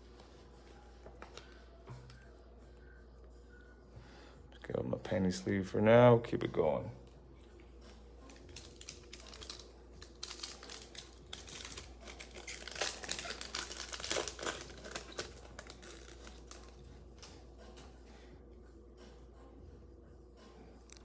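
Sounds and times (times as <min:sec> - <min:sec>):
plastic wrapper crinkling and tearing: 0:08.2 - 0:16.8.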